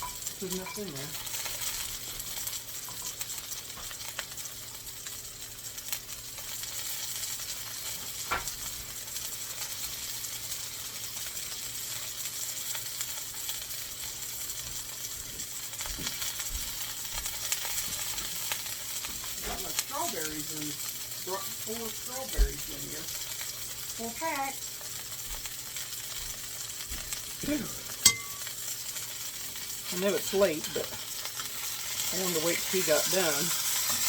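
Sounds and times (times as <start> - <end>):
meat sizzling on a grill: 0.0 - 34.0
metal clink: 28.0 - 28.5.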